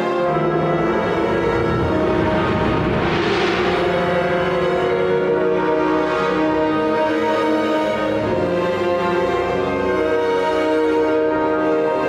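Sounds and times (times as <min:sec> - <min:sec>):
orchestra holding notes: 0:00.0 - 0:12.0
low rumble: 0:00.2 - 0:08.2.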